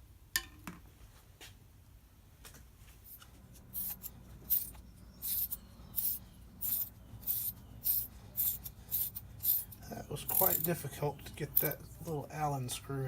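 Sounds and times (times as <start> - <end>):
rhythmic scraping strokes: 3.7 - 12.2.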